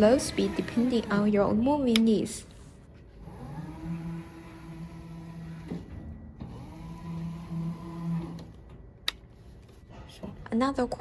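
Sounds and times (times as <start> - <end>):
electric motors whining: 0.0 - 2.1, 3.2 - 8.8.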